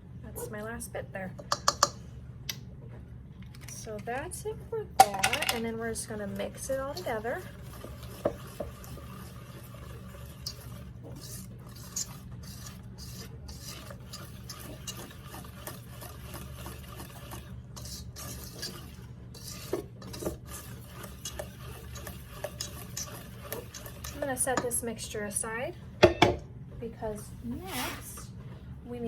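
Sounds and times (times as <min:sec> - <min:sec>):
utensil scraping a mixing bowl: 0:05.3 - 0:25.2.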